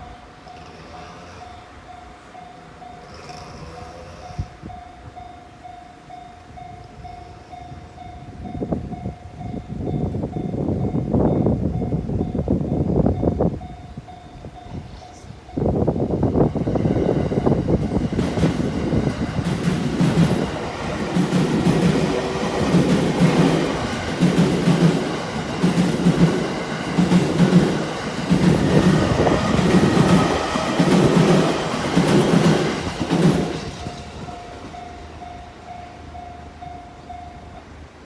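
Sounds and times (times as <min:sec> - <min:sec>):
train wheels clacking on rails: 0:16.5 - 0:36.3.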